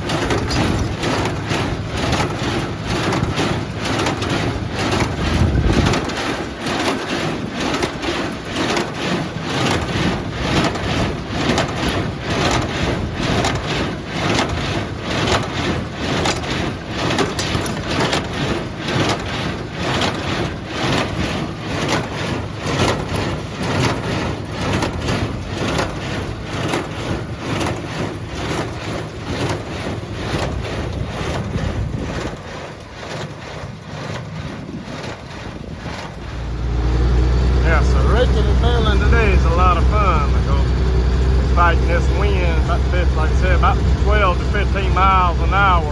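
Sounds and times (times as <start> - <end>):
wind on microphone: 0.0 - 6.2, 29.2 - 32.7
tractor engine: 0.0 - 45.9.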